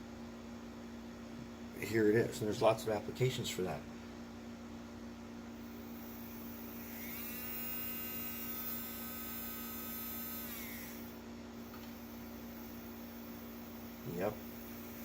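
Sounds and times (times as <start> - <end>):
electrical hum: 0.0 - 15.0
small electric motor whining: 5.6 - 15.0.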